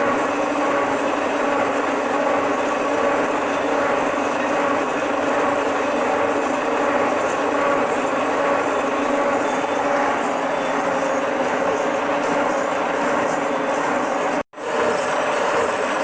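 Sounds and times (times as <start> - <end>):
cutter whine: 0.0 - 16.0
milling machine humming: 0.0 - 16.0
cutter cutting steel: 4.3 - 16.0.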